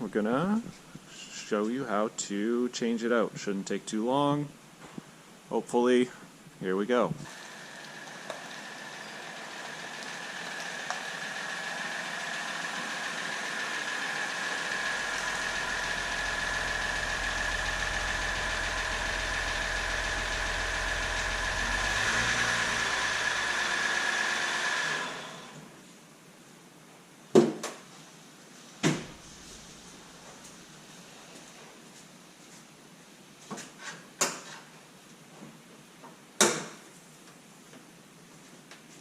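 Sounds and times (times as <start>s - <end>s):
motor whining: 7.3s - 25.7s.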